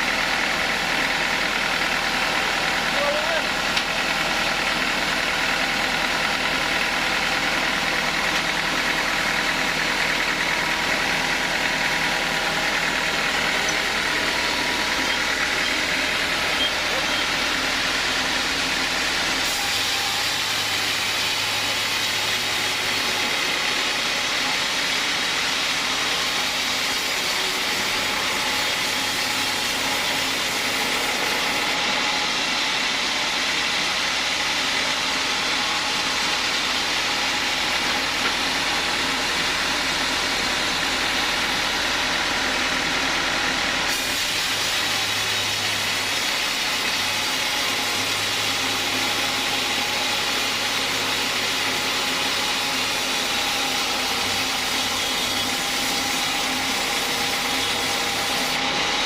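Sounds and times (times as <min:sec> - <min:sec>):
sawmill saw running: 0:00.0 - 0:59.0.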